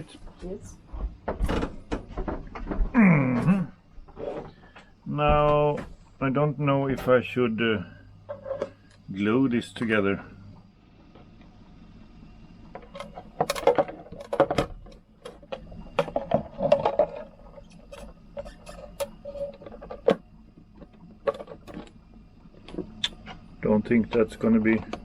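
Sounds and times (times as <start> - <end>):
hardware part clicking and rattling: 12.8 - 22.0.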